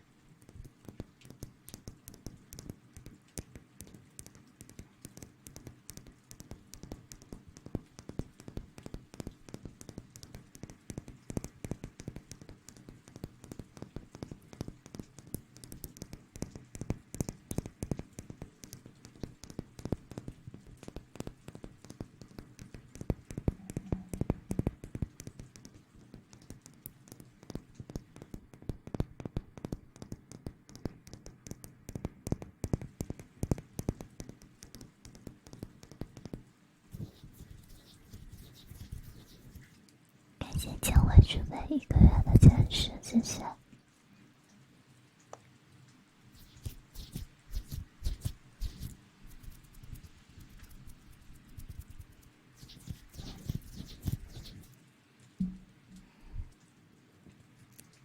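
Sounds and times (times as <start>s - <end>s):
rustling on microphone: 36.9s - 39.9s, 46.3s - 56.6s
tapping on microphone: 55.4s - 56.4s.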